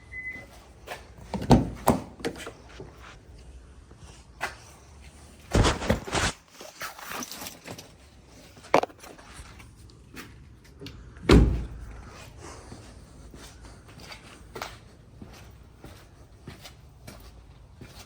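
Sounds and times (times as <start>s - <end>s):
heavy thump: 5.5s - 6.3s.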